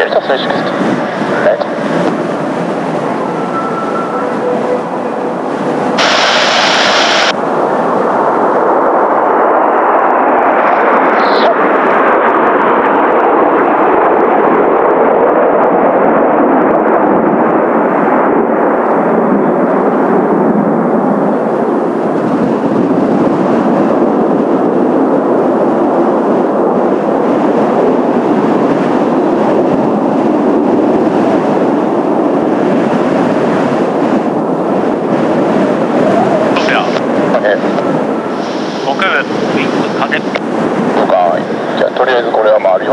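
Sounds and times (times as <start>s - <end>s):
jet engines rumbling: 0.0s - 42.9s.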